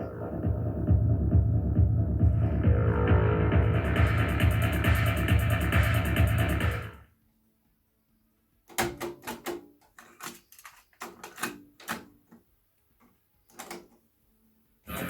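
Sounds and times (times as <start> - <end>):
electronic keyboard percussive hits: 0.3 - 7.0.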